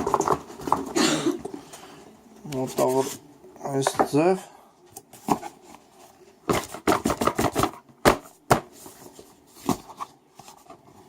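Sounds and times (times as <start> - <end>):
boxes knocking and scraping in carton: 6.5 - 10.1.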